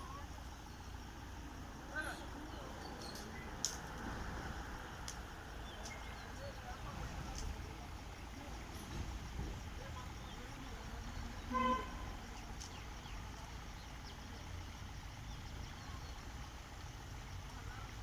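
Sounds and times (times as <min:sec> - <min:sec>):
vehicle horn toot: 0:11.5 - 0:12.2.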